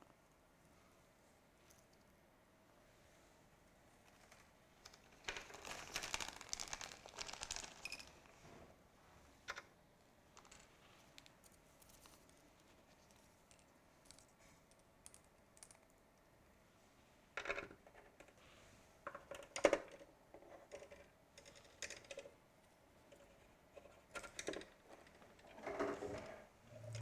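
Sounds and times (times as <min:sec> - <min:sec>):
clicks and rattles of small parts: 0:04.1 - 0:08.3, 0:10.4 - 0:16.0, 0:19.1 - 0:22.4.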